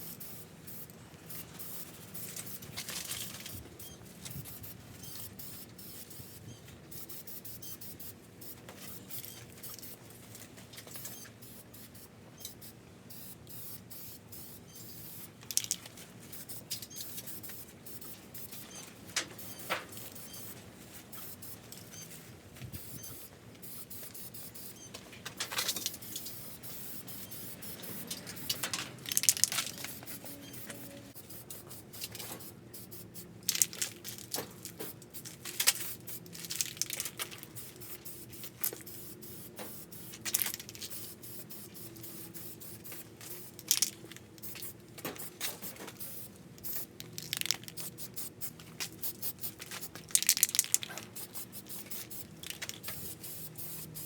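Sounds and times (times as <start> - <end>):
spray-paint can hissing: 0.0 - 2.6, 4.5 - 10.0, 11.5 - 18.7, 19.4 - 20.6, 21.2 - 21.6, 22.8 - 24.8, 26.0 - 54.0
can clicks and rattles: 15.4 - 15.9, 28.2 - 30.0, 33.4 - 38.9, 39.6 - 41.1, 42.8 - 54.0.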